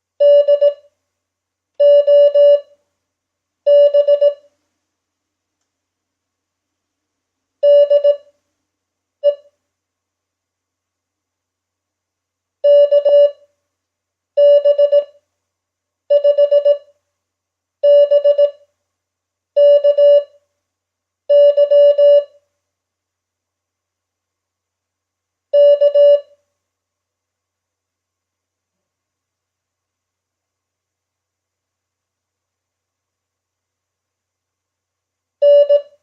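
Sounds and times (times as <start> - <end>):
morse code beeps: 0.2 - 0.8, 1.8 - 2.7, 3.7 - 4.4, 7.6 - 8.2, 12.7 - 13.4, 14.4 - 15.1, 16.1 - 16.8, 17.8 - 18.6, 19.6 - 20.3, 21.3 - 22.3, 25.6 - 26.3, 35.4 - 36.0.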